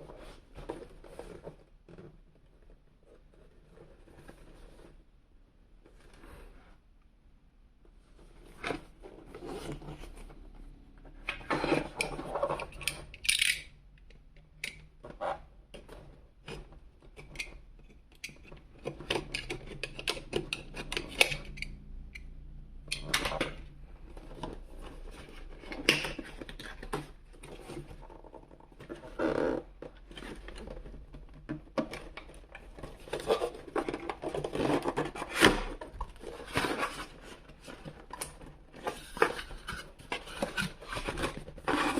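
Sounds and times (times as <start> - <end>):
cardboard and plastic rustling: 0.0 - 6.8, 7.9 - 12.8, 23.4 - 41.9.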